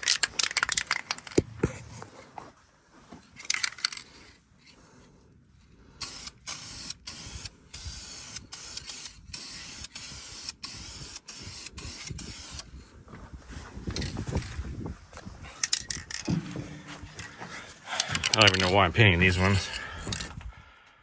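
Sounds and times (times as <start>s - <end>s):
spray paint can hissing: 6.0s - 12.7s.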